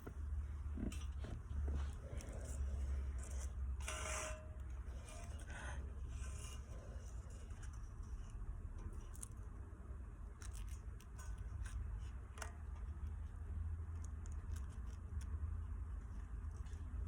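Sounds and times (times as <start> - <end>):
steady low hum: 0.0 - 17.0
small clicks and handling noises: 6.1 - 9.6, 10.2 - 17.0.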